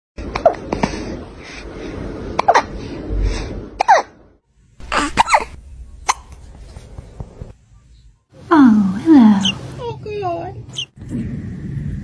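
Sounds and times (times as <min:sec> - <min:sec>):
kittens hiccuping: 0:08.4 - 0:09.8.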